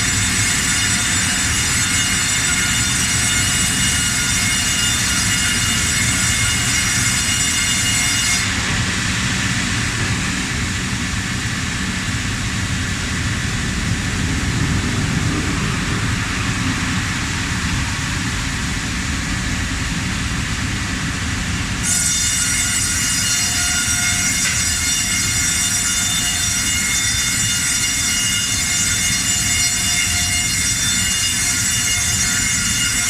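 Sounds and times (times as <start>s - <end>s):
high whine: 0.0s - 33.0s
band saw running: 21.8s - 33.0s.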